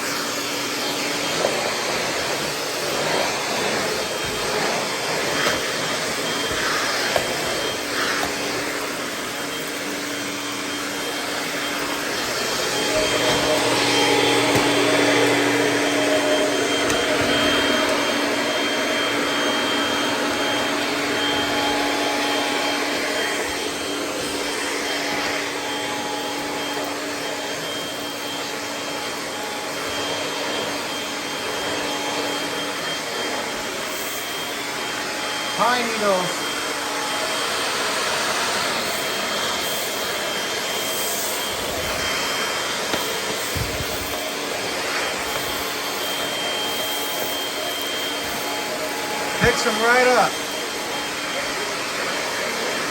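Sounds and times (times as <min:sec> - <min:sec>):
vacuum cleaner motor hum: 0:00.0 - 0:52.9.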